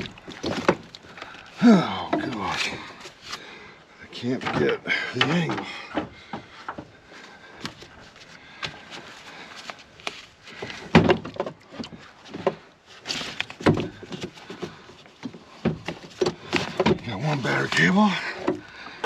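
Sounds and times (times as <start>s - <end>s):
knocks and scrapes of truck battery: 12.3s - 18.6s.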